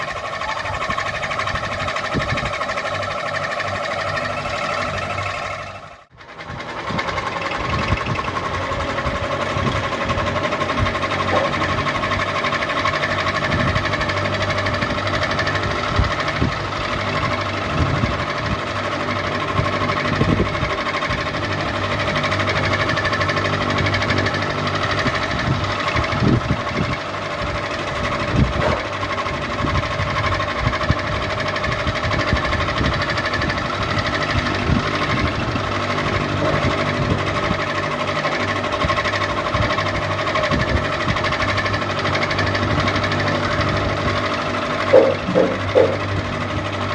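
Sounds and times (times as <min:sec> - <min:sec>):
ceiling fan motor hum: 0:00.0 - 0:46.9
rattling knocks: 0:44.7 - 0:46.3.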